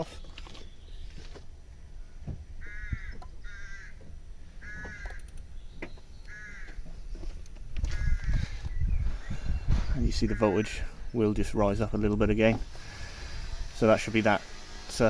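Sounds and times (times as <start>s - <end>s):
bird calling: 2.6s - 7.1s, 7.8s - 11.3s.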